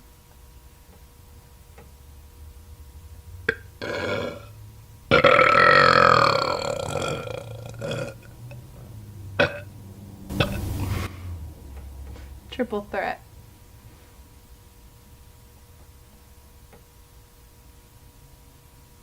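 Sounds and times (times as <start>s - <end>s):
woman burping: 3.5s - 4.5s, 5.1s - 8.3s, 9.4s - 9.7s, 10.3s - 10.7s.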